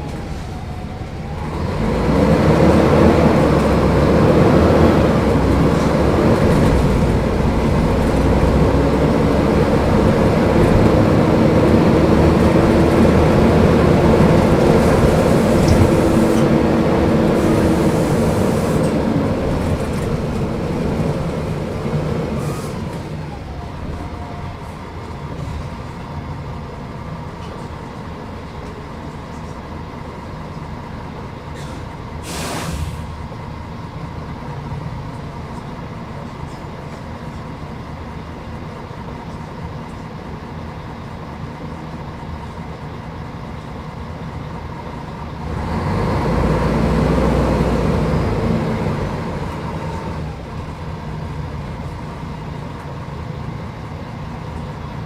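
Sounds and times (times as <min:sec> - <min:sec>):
bus diesel engine running: 0:00.0 - 0:55.0
air brake hiss: 0:22.4 - 0:23.0, 0:31.6 - 0:33.2.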